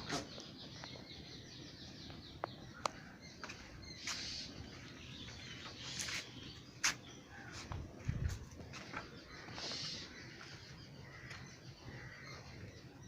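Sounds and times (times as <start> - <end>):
faint outdoor ambience: 0.0 - 13.0.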